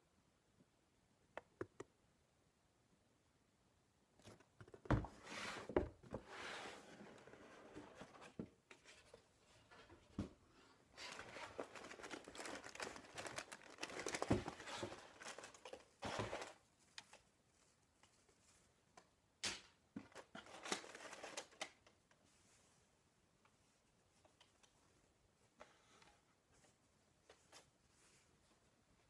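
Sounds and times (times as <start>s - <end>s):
paper packaging crinkling: 11.0s - 17.2s, 20.2s - 21.8s.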